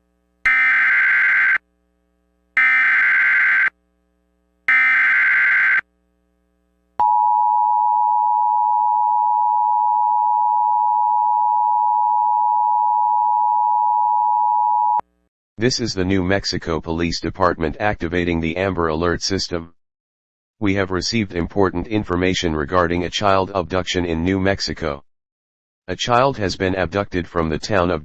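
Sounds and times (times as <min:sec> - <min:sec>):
alert data header bursts: 0:00.5 - 0:01.6, 0:02.6 - 0:03.7, 0:04.7 - 0:05.8.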